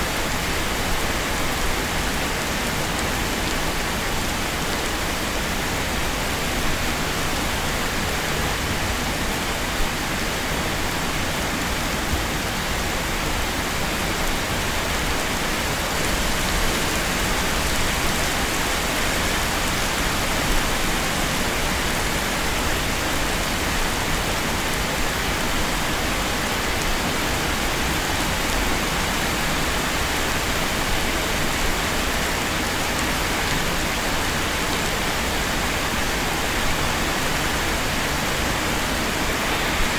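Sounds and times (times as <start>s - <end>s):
rain falling: 0.0s - 39.9s.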